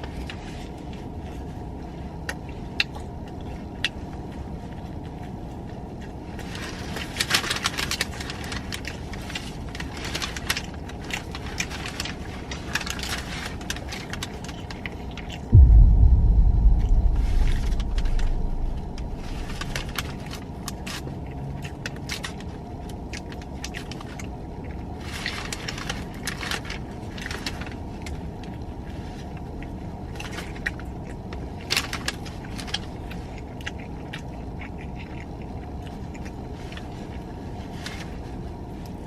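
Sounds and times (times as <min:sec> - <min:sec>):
car interior rumble: 0:15.6 - 0:20.7.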